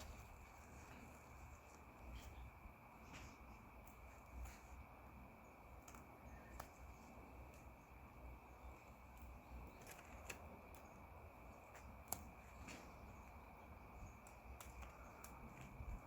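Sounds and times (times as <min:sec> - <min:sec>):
steady high hum: 0:00.0 - 0:16.0
light clicks: 0:05.8 - 0:07.8, 0:09.1 - 0:16.0.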